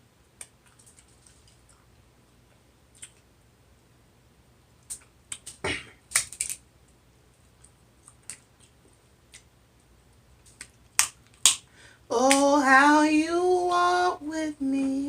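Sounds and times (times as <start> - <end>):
seafood shells cracking while eating: 4.8 - 6.7, 10.4 - 11.7.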